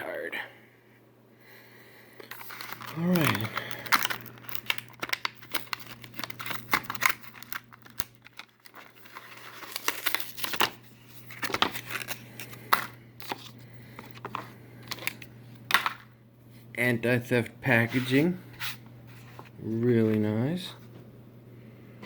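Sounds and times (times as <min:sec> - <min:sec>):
plastic packaging crinkling and clicking: 0:02.2 - 0:16.1.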